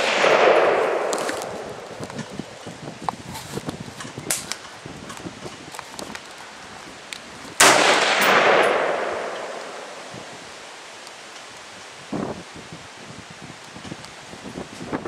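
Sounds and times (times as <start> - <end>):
rifle shot: 0.0 - 2.3, 7.6 - 10.3.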